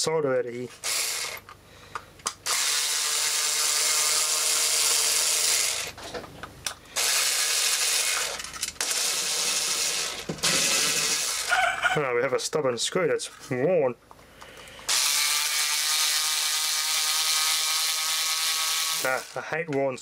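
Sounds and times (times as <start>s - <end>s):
electric screwdriver running: 0.8s - 1.4s, 2.4s - 5.9s, 7.0s - 11.5s, 14.9s - 19.4s.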